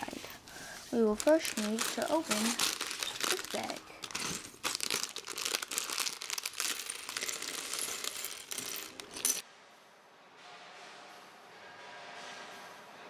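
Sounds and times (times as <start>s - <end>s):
faint music: 0.0s - 5.7s, 7.0s - 13.0s
plastic pieces clattering in a bag: 1.0s - 9.4s.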